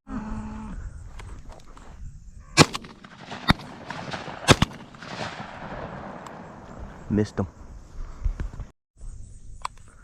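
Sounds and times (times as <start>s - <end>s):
shotgun shots: 2.6s - 7.2s.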